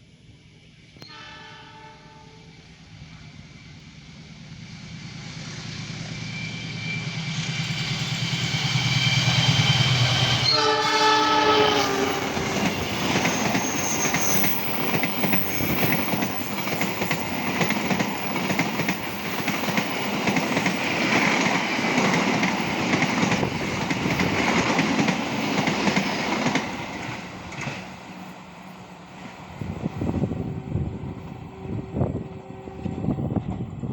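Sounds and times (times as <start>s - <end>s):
passenger train passing: 0.0s - 33.9s
train horn blast: 1.0s - 2.6s, 10.4s - 12.6s, 30.0s - 33.3s.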